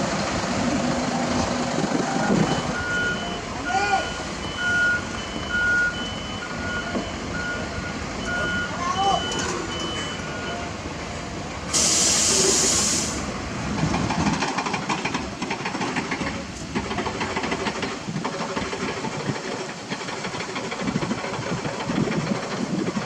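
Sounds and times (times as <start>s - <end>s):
diesel machinery rattling: 0.0s - 23.0s
reversing alarm: 1.1s - 10.8s
air brakes hissing: 11.7s - 13.3s.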